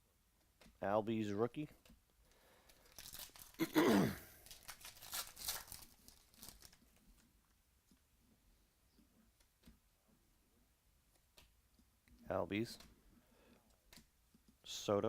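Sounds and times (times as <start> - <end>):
foil wrapper tearing and crinkling: 2.7 - 3.7, 4.4 - 6.8.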